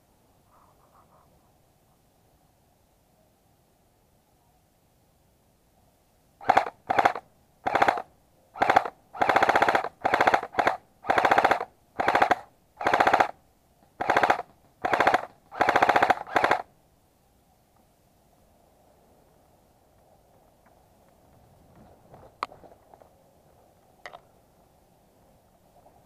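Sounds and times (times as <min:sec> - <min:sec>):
airsoft gun bursts: 0:06.4 - 0:13.4, 0:14.0 - 0:16.7.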